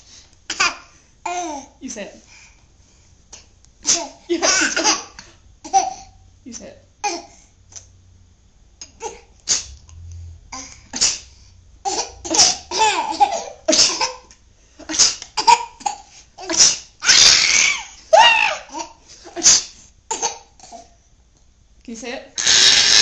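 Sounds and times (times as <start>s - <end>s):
baby laughing: 11.9s - 14.2s.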